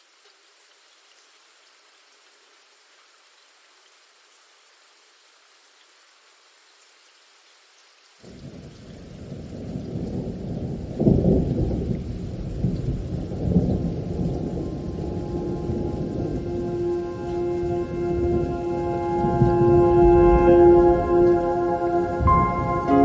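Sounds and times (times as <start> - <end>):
rain hiss: 0.0 - 23.0
thunder rumble: 8.4 - 23.0.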